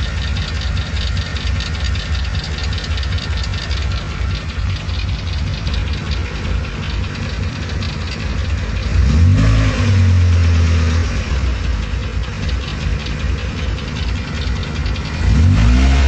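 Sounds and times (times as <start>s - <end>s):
car engine idling and revving: 0.0s - 16.0s.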